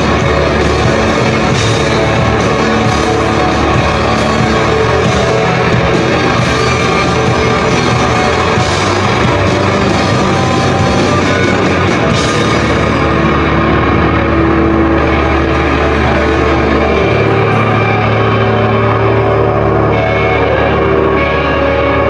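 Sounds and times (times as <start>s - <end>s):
rock band playing: 0.0s - 22.0s.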